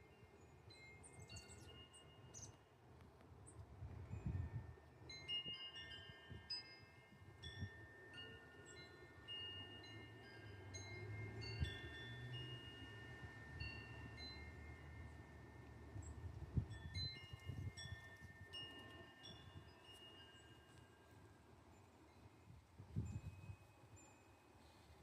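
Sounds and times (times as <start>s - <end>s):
metal wind chimes tinkling: 0.0s - 3.0s, 3.7s - 25.0s
wind rumble on microphone: 3.4s - 6.6s, 11.4s - 19.8s, 22.3s - 23.7s.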